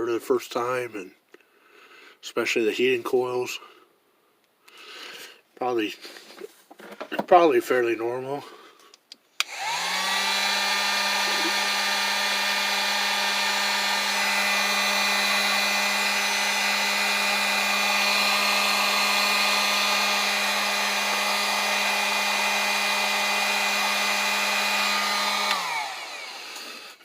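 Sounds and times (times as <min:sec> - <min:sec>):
heat gun fan hum: 0:09.4 - 0:27.0.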